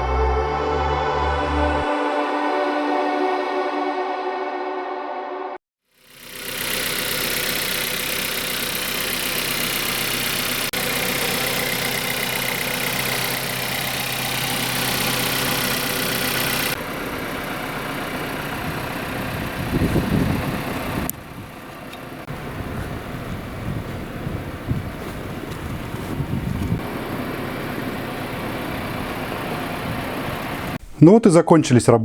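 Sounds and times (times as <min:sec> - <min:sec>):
car engine idling: 0:06.0 - 0:30.8.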